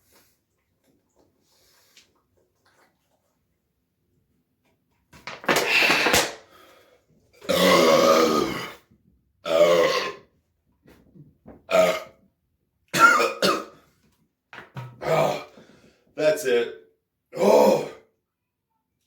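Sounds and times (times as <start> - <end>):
man belching: 7.4 - 8.8, 9.4 - 10.3, 11.7 - 12.2, 15.0 - 15.5, 17.3 - 18.0.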